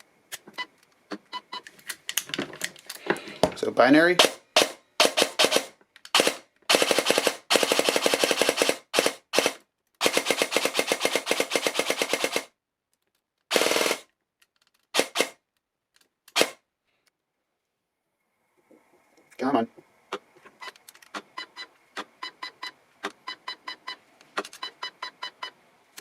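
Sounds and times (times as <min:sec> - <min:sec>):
airsoft electric gun firing bursts: 0:04.1 - 0:12.6, 0:13.5 - 0:14.1, 0:14.9 - 0:15.4, 0:16.3 - 0:16.6.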